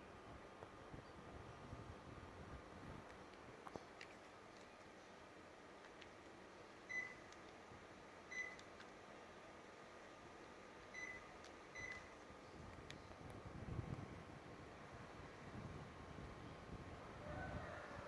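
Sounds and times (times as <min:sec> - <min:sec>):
air conditioner beeping: 0:06.9 - 0:07.4, 0:08.2 - 0:08.7, 0:10.9 - 0:12.4.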